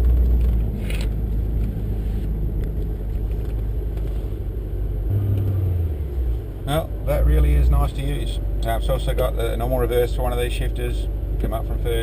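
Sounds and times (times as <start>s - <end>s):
vee eight engine idling: 5.1s - 10.2s.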